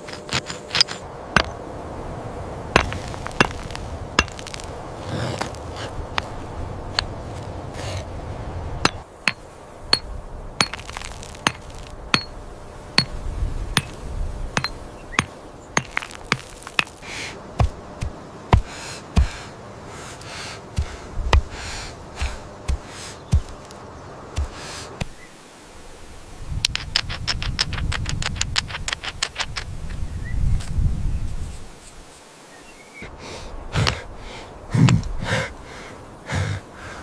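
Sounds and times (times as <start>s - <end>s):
scraping: 0.0s - 1.6s
heavy thuds: 13.8s - 19.5s, 20.7s - 23.6s, 24.3s - 25.2s.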